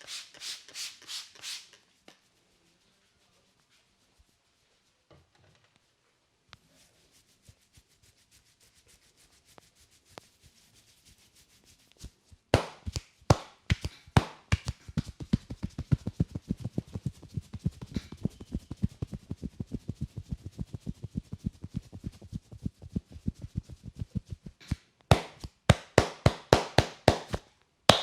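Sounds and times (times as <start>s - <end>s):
hands rubbing head: 0.0s - 5.1s, 6.6s - 28.0s
hands slapping head: 12.6s - 16.2s, 24.6s - 28.0s
dull thuds of head tapping: 25.1s - 28.0s.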